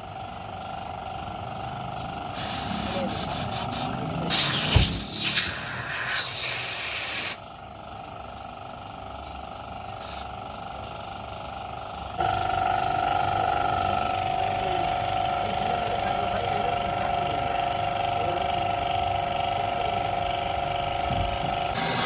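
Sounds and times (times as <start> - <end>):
spray jet hissing: 2.4 - 7.4.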